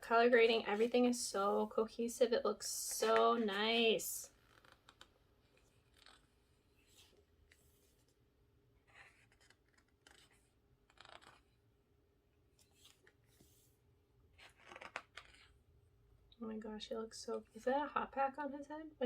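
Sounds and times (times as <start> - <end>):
glossy pages rustling: 8.9 - 11.6, 12.6 - 13.8, 14.4 - 15.6.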